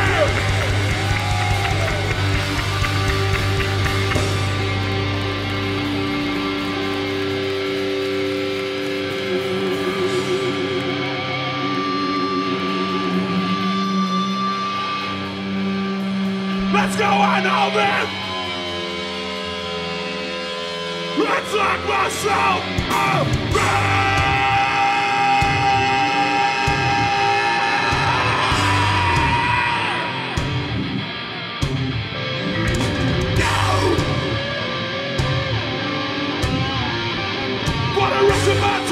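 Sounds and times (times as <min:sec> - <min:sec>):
electric guitars ringing through amplifiers: 0:00.0 - 0:38.9
punk band playing live: 0:00.0 - 0:38.9
person yelling vocals: 0:16.6 - 0:18.2, 0:21.2 - 0:30.5, 0:33.3 - 0:34.4, 0:37.9 - 0:38.9.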